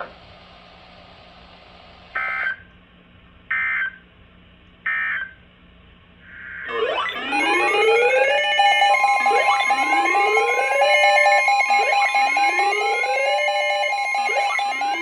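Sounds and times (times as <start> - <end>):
electronic alert tone: 6.9 - 15.0.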